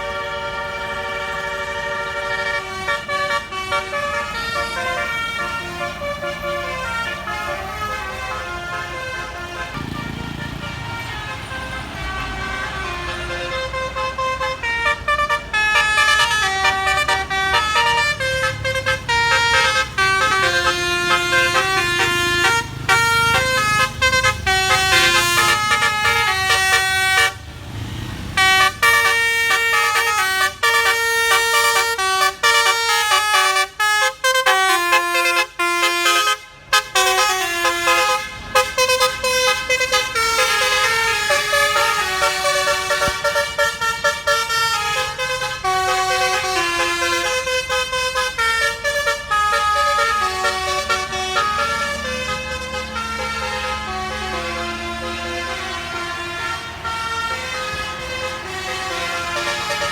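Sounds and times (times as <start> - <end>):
low vehicle rumble: 0.0 - 31.3
multi-tone bus horn melody: 0.0 - 59.9.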